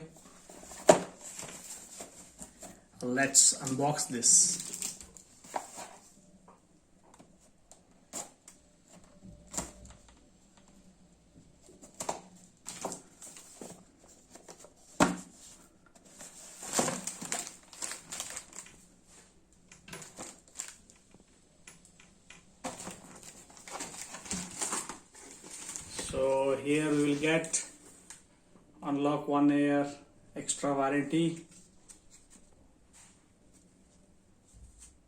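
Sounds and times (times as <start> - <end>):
packaging rustling and clicking: 4.5 - 6.0, 11.6 - 15.3, 16.0 - 18.9, 19.8 - 21.2, 22.6 - 26.2.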